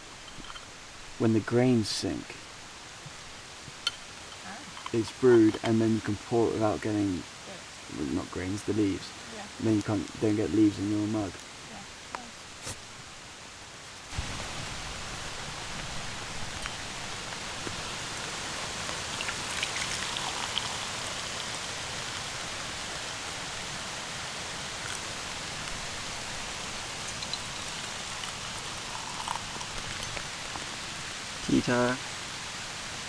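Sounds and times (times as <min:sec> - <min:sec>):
steady rain falling: 0:00.0 - 0:33.0
raindrop taps: 0:26.9 - 0:30.7.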